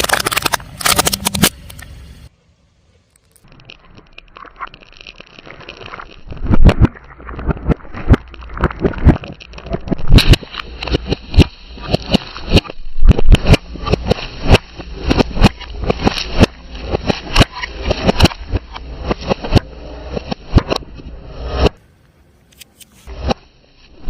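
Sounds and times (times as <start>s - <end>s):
car tyre crushing crunchy objects: 0.0s - 1.9s, 3.2s - 19.8s
low steady hum: 0.0s - 24.0s.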